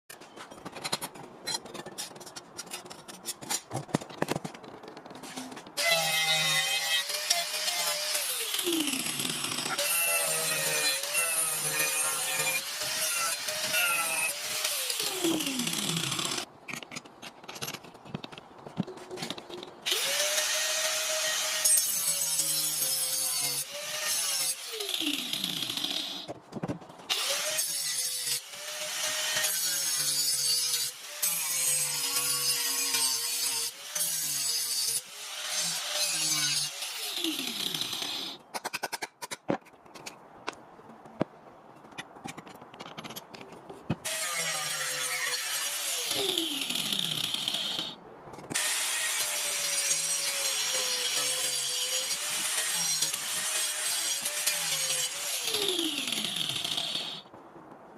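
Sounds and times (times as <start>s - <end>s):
angle grinder sawing through wood: 5.8s - 16.5s, 19.9s - 26.3s, 27.1s - 38.4s, 48.6s - 57.2s.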